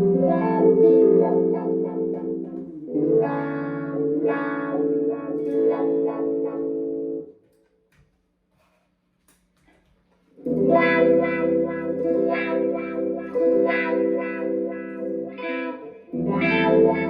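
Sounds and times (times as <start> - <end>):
electric guitar wah chords: 0.0 - 7.3, 10.4 - 17.0.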